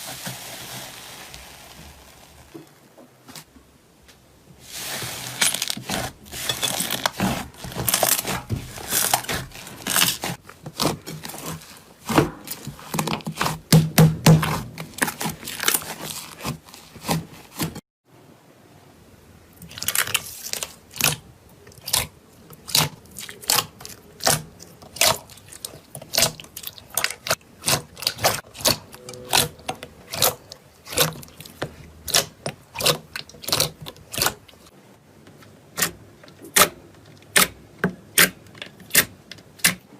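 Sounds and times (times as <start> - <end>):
slime crackling: 4.7 - 13.8, 14.4 - 17.7, 19.6 - 34.7.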